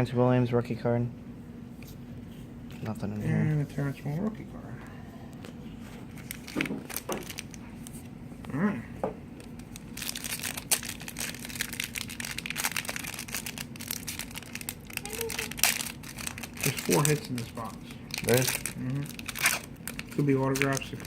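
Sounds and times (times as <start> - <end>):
plastic wrapper crinkling and tearing: 6.1 - 8.0, 9.4 - 21.0.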